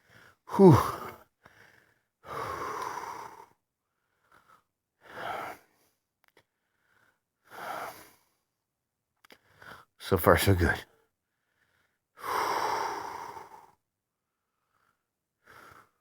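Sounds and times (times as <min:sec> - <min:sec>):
man breathing hard: 0:00.0 - 0:03.5.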